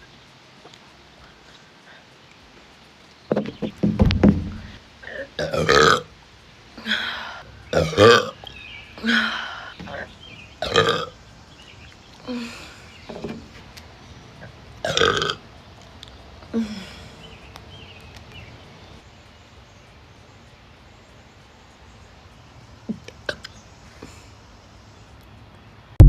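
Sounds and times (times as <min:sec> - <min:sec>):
woman burping loudly: 0:05.0 - 0:06.1, 0:07.7 - 0:11.1, 0:14.8 - 0:15.4.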